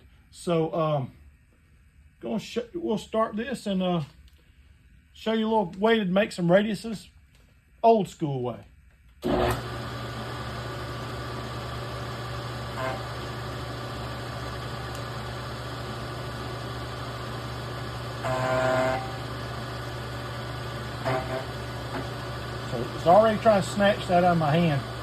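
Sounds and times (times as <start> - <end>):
milling machine motor humming: 9.2 - 25.0.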